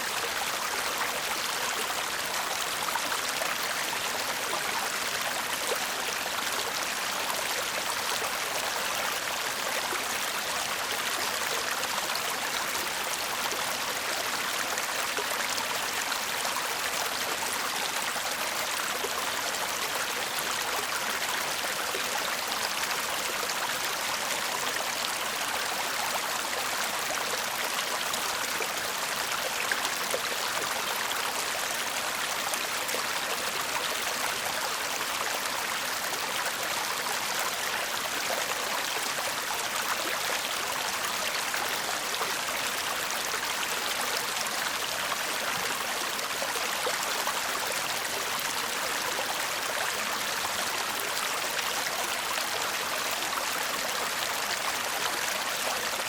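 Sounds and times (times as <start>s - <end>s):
stream babbling over stones: 0.0s - 56.0s.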